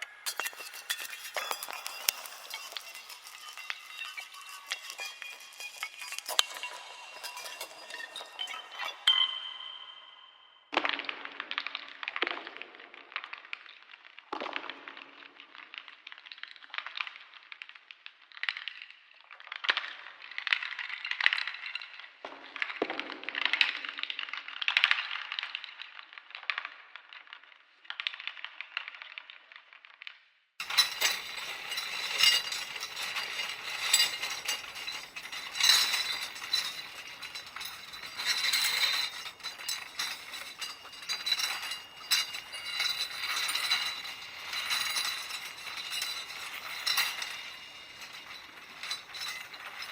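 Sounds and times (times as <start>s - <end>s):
metal chains rattling: 0.0s - 9.2s, 30.6s - 49.9s.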